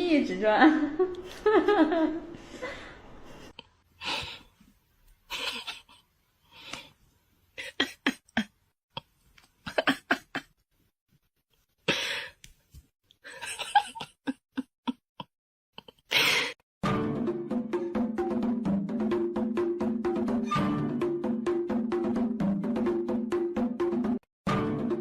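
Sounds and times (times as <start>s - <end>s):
person laughing: 5.3s - 6.0s, 7.6s - 8.6s, 9.6s - 10.5s, 13.3s - 15.0s.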